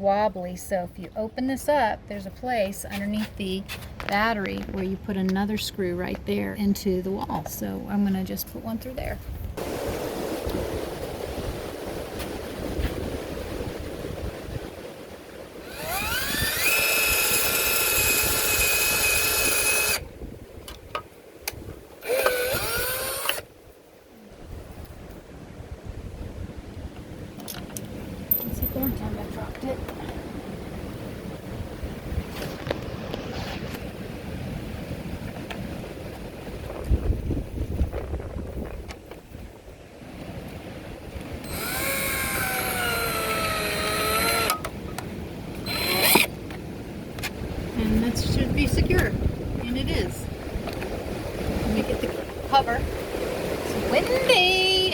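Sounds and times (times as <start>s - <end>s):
power drill driving a screw: 15.6s - 20.0s, 22.0s - 23.4s, 41.4s - 44.7s, 45.6s - 46.3s.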